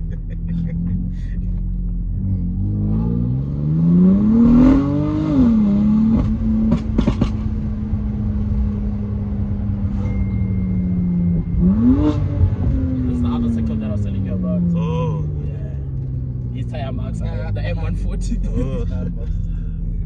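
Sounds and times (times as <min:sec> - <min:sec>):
car engine accelerating: 0:00.0 - 0:20.0
exhaust cracks: 0:06.2 - 0:08.6.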